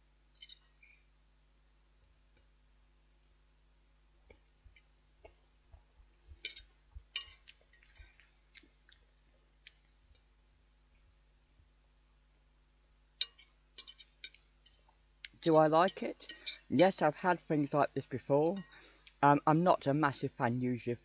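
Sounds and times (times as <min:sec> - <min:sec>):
faint low hum: 0:00.0 - 0:21.0
fork tapping a dish: 0:13.2 - 0:14.8.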